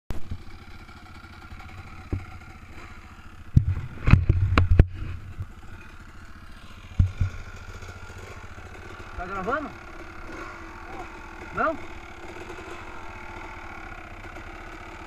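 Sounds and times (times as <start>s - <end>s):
dirt bike engine idling: 0.1s - 15.0s
loud knocks and clatter: 3.5s - 5.4s, 6.9s - 7.5s.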